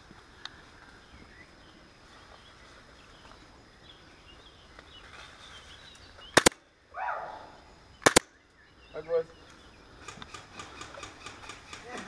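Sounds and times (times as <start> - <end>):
faint birds chirping: 0.0 - 12.0
sharp click: 8.0 - 8.3.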